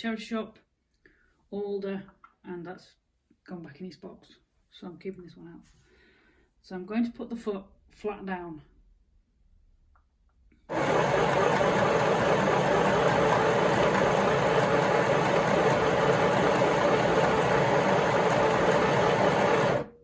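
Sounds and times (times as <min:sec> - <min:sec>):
sewing machine clatter: 0:10.7 - 0:20.0.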